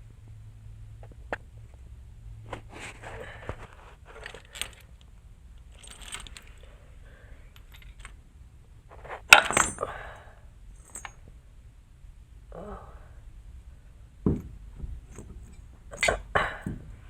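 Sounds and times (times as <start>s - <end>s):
metal tools clinking: 4.1s - 5.0s, 5.6s - 6.8s, 7.4s - 8.2s, 9.3s - 10.0s, 10.8s - 11.2s, 14.3s - 16.8s
ringing metal clank: 9.4s - 9.9s, 15.1s - 16.8s.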